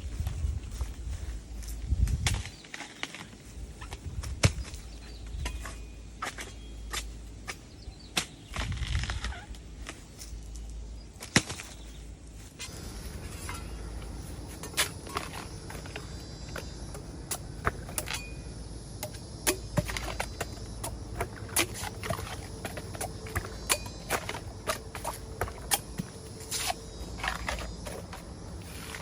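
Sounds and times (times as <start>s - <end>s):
low background hum: 0.0s - 29.0s
bamboo cracking and snapping: 8.2s - 11.9s.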